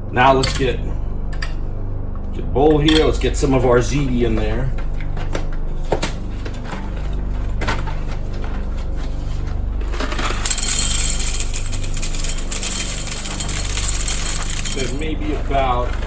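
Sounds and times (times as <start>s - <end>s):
steady low hum: 0.0s - 16.0s
dry pasta rattling into bowl: 10.0s - 15.0s.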